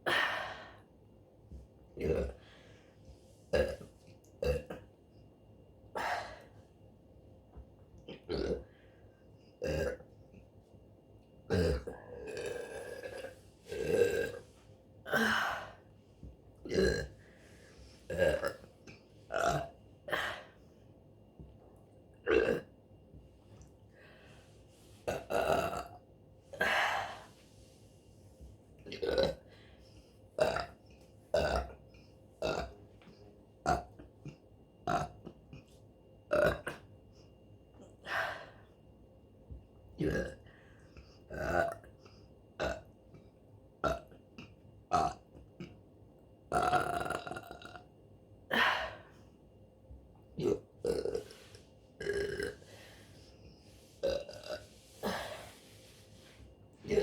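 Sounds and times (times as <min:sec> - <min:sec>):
woman burping: 0:02.0 - 0:02.4, 0:03.6 - 0:03.8, 0:04.4 - 0:04.9, 0:08.0 - 0:08.7, 0:09.6 - 0:10.0, 0:11.5 - 0:14.4, 0:16.6 - 0:17.1, 0:18.1 - 0:18.7, 0:19.3 - 0:20.5, 0:22.3 - 0:22.7, 0:25.1 - 0:26.0, 0:28.9 - 0:29.5, 0:30.4 - 0:30.8, 0:50.4 - 0:52.7, 0:54.0 - 0:55.6.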